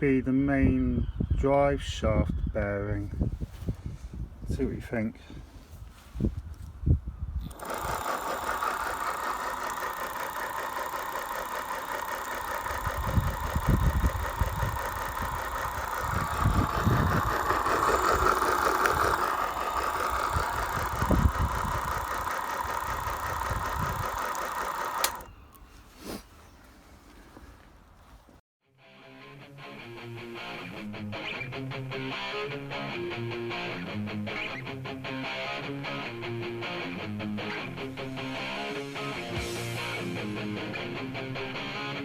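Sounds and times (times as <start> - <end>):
motor grinding whine: 7.4 - 25.6.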